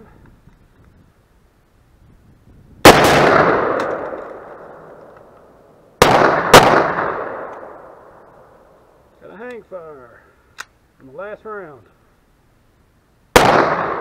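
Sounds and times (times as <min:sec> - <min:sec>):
gunshot echo: 0:02.8 - 0:04.8, 0:06.0 - 0:08.0, 0:13.4 - 0:14.0
pistol shots: 0:02.8 - 0:04.8, 0:06.0 - 0:07.9, 0:13.3 - 0:14.0
rifle shots: 0:02.8 - 0:05.0, 0:06.0 - 0:08.1, 0:13.3 - 0:14.0.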